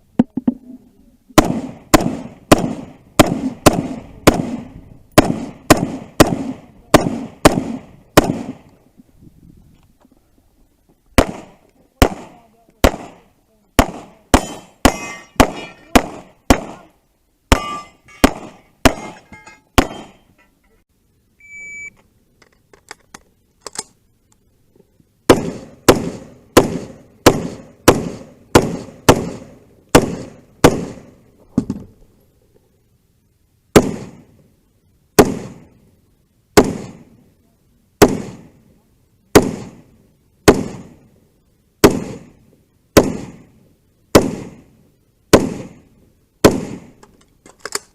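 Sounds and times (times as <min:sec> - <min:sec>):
gunshots: 0:01.4 - 0:08.7, 0:11.2 - 0:20.3, 0:25.3 - 0:31.2, 0:33.7 - 0:34.3, 0:35.2 - 0:35.7, 0:36.6 - 0:37.1, 0:38.0 - 0:38.6, 0:39.3 - 0:41.0, 0:41.8 - 0:42.4, 0:43.0 - 0:43.5, 0:44.1 - 0:44.7, 0:45.3 - 0:47.0
faint metallic clinks: 0:19.1 - 0:20.8.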